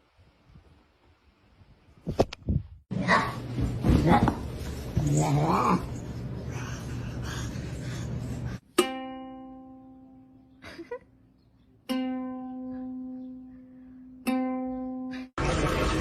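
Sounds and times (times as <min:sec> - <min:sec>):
plucked string notes: 0:08.7 - 0:10.4, 0:11.8 - 0:15.3.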